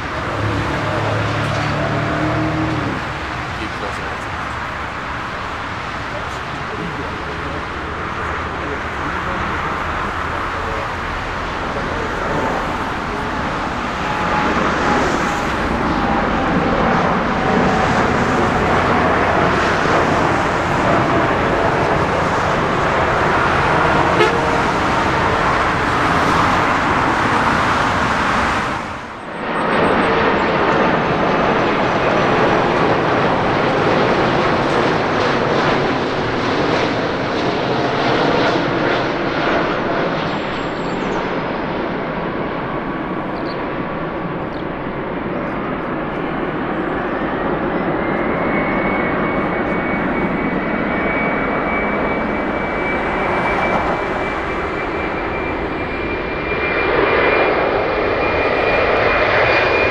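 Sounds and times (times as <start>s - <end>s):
jet engines roaring: 0.0s - 59.9s.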